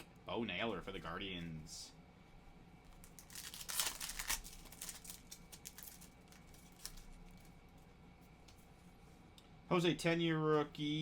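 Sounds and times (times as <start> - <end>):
cards clicking and rustling: 3.0 - 7.5
foil pack crinkling and tearing: 3.0 - 7.5.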